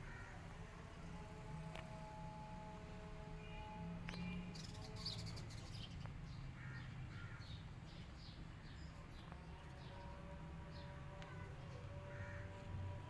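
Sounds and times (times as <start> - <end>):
birds chirping: 4.1 - 12.5.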